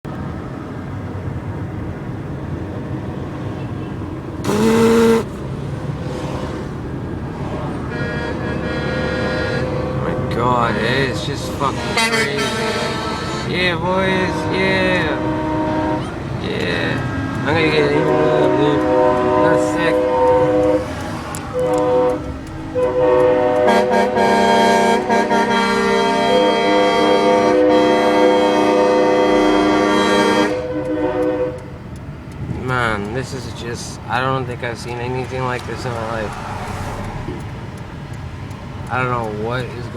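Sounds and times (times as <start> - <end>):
road traffic: 0.0 - 39.9
faint horn sounding: 4.4 - 5.4, 11.6 - 31.6
truck air horn blast: 4.4 - 5.4, 7.9 - 9.8, 11.7 - 16.2, 17.1 - 20.9, 21.5 - 31.6.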